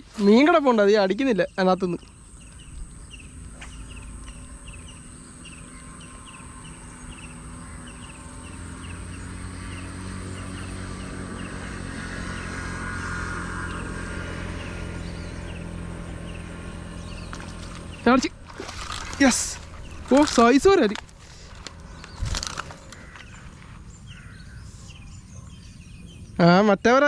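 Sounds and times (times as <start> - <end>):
outdoor background noise: 0.0 - 27.0.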